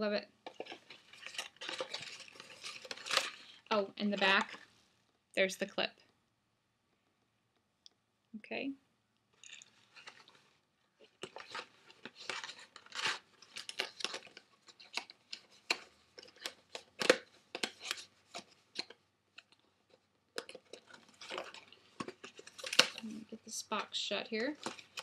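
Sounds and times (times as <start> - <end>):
paper packaging crinkling: 0.5 - 4.7, 9.4 - 19.7, 20.3 - 25.0
small crackles and taps: 11.0 - 23.1, 23.8 - 25.0.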